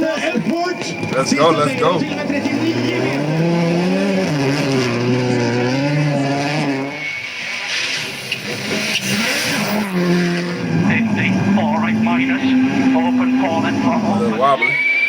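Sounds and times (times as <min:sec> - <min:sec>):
rally car engine revving: 0:00.0 - 0:15.0.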